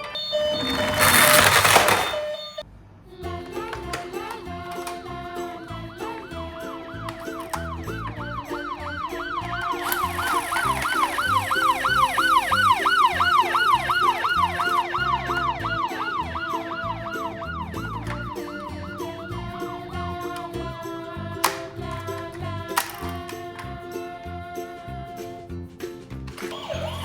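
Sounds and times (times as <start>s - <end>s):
siren yelping: 0.0s - 2.6s, 5.7s - 19.8s, 26.5s - 27.0s
background music: 3.2s - 27.0s.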